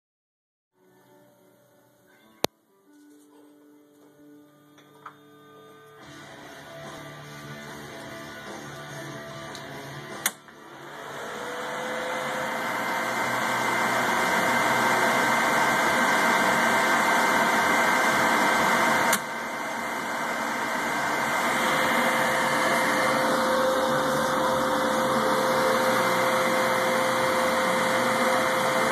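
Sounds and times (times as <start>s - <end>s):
cooling fans whirring: 9.4s - 28.9s.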